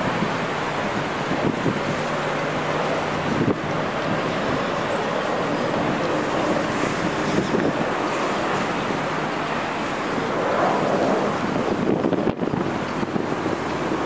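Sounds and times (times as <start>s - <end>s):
cars passing on a highway: 0.0s - 14.0s.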